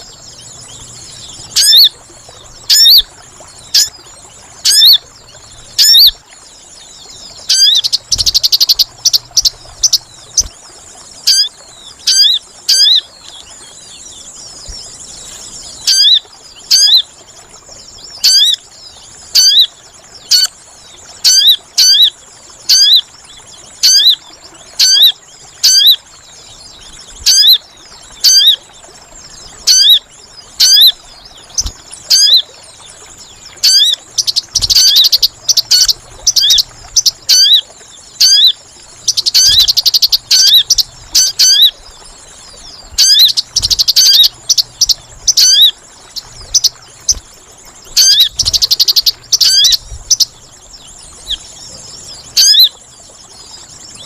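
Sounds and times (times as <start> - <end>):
bird chirps: 0.0 - 3.1, 7.4 - 10.5, 33.6 - 37.6, 38.2 - 41.8, 42.6 - 47.2, 47.9 - 52.8.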